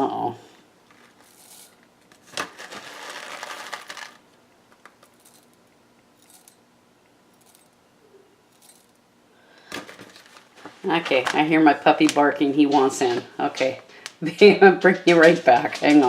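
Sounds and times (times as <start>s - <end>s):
pellets rattling into a glass dish: 1.0s - 4.2s.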